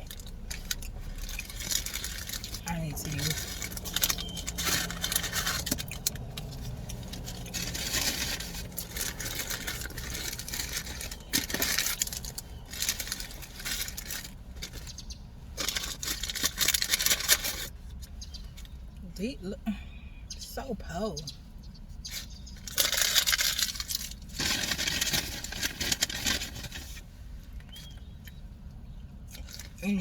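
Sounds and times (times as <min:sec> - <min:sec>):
packaging rustling and crinkling: 0:00.0 - 0:15.0, 0:15.6 - 0:17.8, 0:22.1 - 0:27.0.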